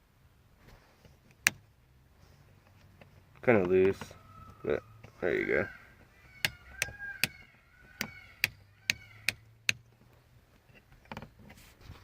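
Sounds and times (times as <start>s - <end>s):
rocker switch clicking: 6.4s - 9.9s.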